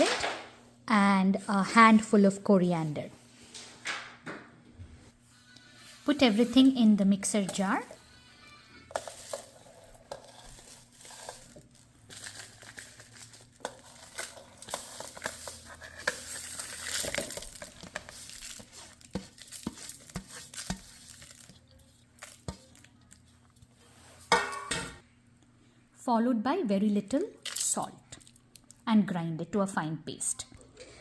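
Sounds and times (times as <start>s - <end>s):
dry ingredients rustling: 5.3s - 8.2s, 8.8s - 24.2s.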